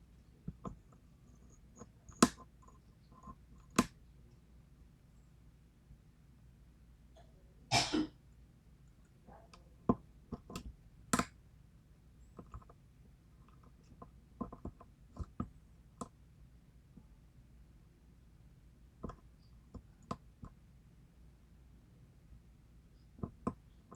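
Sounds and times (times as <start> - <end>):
person clearing throat: 7.7 - 8.2.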